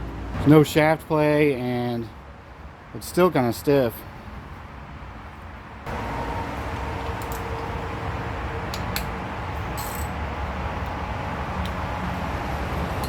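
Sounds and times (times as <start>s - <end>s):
steady background hum: 0.0s - 13.0s
metallic clinks of tools: 9.8s - 10.2s.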